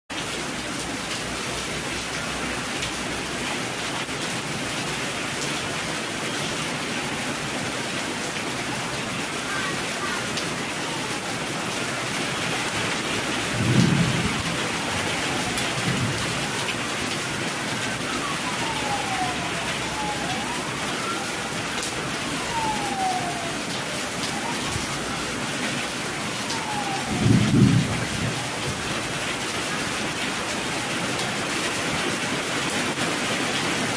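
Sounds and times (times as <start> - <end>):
steady rain: 0.1 - 33.9
siren wailing: 8.2 - 29.1
thunder rumbling: 10.2 - 29.6.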